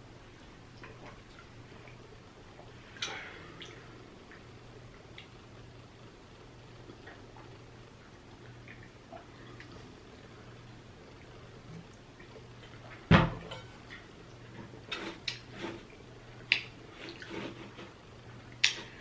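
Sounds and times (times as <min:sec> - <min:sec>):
eating clicks and wet smacks: 0:08.4 - 0:09.8, 0:15.2 - 0:15.5, 0:16.4 - 0:17.3, 0:18.5 - 0:19.0.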